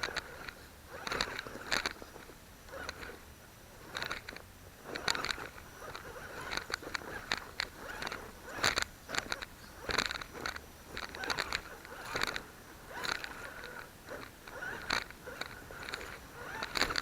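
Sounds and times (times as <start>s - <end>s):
sharp clicks and knocks: 3.9s - 17.0s.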